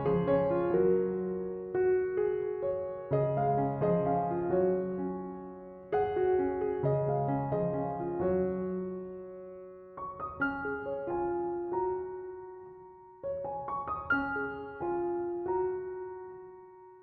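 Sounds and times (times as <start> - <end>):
soft piano music: 0.0 - 17.0.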